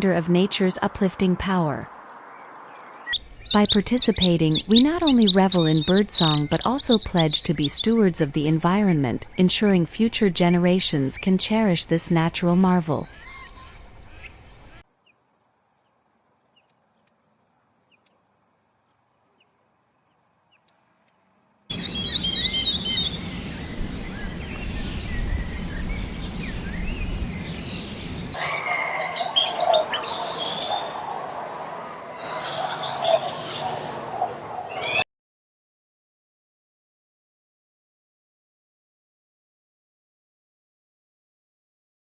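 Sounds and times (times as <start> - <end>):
rumbling outdoor background: 0.0 - 34.8
birds singing and chirping: 2.3 - 14.8, 21.7 - 31.4, 32.2 - 35.0.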